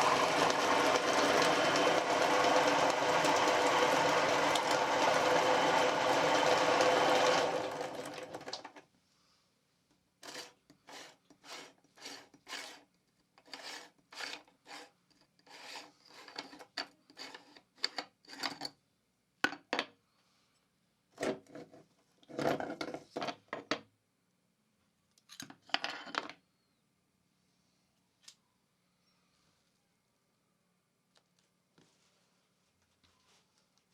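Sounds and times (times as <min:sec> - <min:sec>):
meat grinder running: 0:00.0 - 0:08.8
short scraping strokes: 0:10.2 - 0:12.8.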